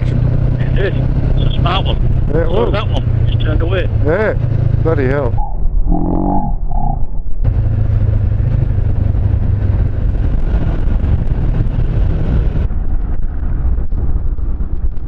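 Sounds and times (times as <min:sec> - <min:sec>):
wind and road noise: 0:00.0 - 0:15.0
motorcycle engine running: 0:07.4 - 0:15.0.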